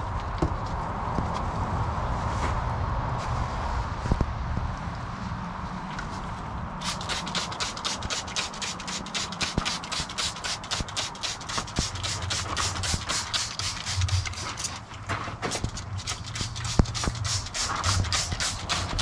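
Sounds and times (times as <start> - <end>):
spray bottle squirting: 6.8 - 19.0.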